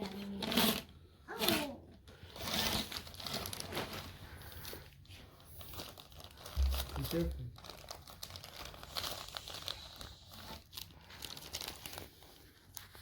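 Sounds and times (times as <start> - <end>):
net crinkling and rustling: 2.3 - 4.2, 5.6 - 13.0.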